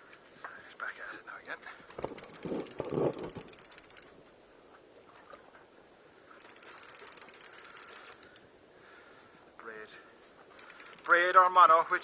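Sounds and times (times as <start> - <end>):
fishing reel drag clicking: 1.9 - 4.1, 6.4 - 8.4, 10.5 - 12.0.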